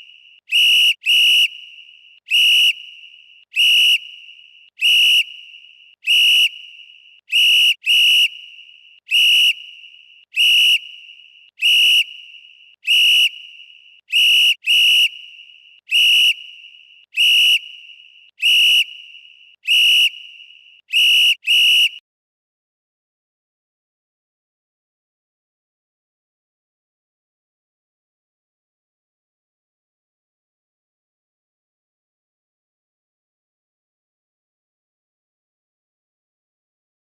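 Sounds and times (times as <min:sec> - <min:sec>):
referee whistle blasts: 0:00.0 - 0:22.0.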